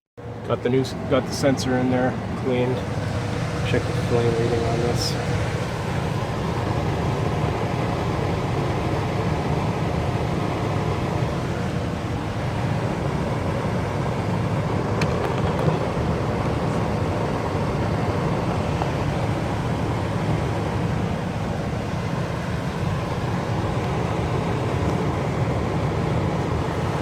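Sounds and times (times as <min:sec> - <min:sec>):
gas furnace rumbling: 0:00.2 - 0:27.0.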